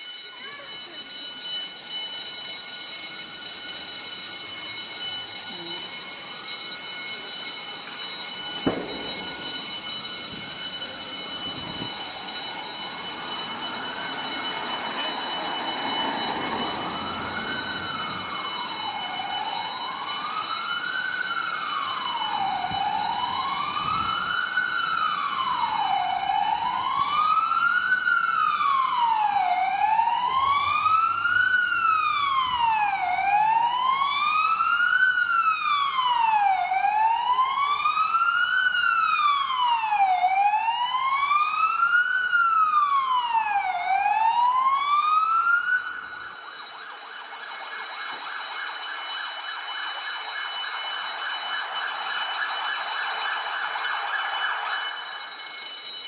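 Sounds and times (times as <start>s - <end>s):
steady high-pitched tone: 0.0s - 20.7s
fire engine siren wailing: 0.0s - 56.0s.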